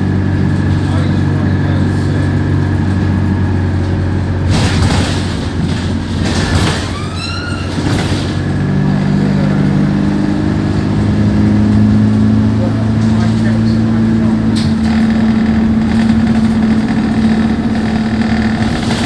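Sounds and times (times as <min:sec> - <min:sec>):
bus diesel engine droning: 0:00.0 - 0:19.0
short rising squeal: 0:06.6 - 0:08.0.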